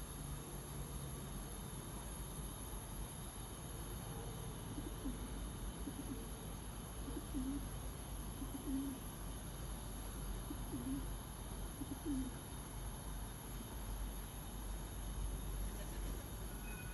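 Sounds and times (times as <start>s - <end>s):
dove cooing: 4.7s - 9.1s, 10.3s - 12.5s.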